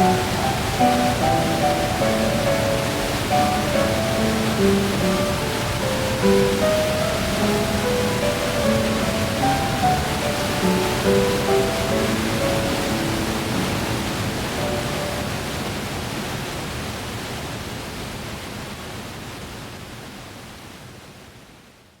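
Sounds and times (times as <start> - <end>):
soft held music notes: 0.0 - 15.8
running water: 0.0 - 19.1.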